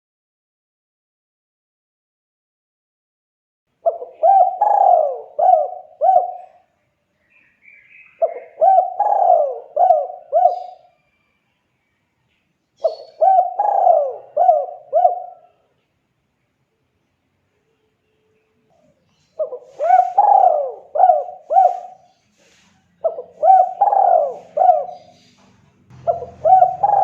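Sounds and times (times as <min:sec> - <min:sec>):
dove cooing: 0:03.8 - 0:06.7, 0:08.2 - 0:11.0, 0:12.8 - 0:15.7, 0:18.8 - 0:27.0.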